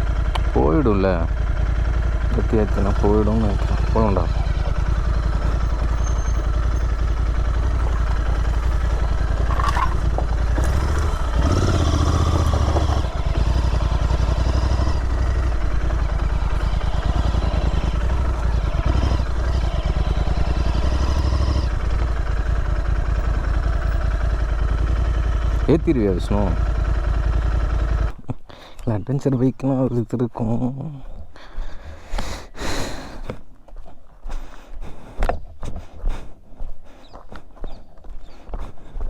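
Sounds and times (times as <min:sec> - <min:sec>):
motorcycle engine running: 0:00.0 - 0:28.7.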